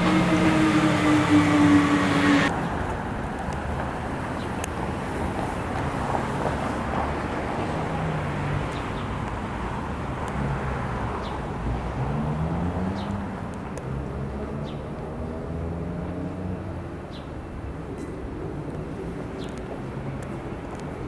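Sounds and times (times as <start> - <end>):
vehicle engine hum: 0.0 - 2.6
road noise: 0.0 - 21.0.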